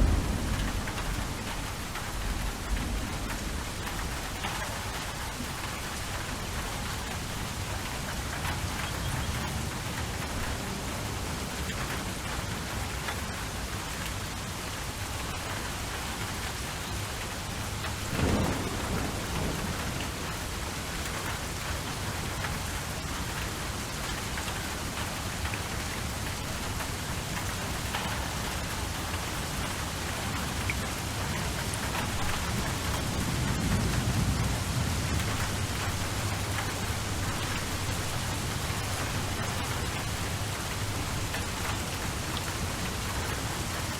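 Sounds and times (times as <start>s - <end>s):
thunder crack: 0.0s - 5.4s, 18.0s - 20.4s, 31.8s - 41.4s
low rolling thunder rumble: 0.0s - 8.9s, 17.8s - 22.7s, 27.4s - 43.9s
heavy rain: 0.0s - 43.9s.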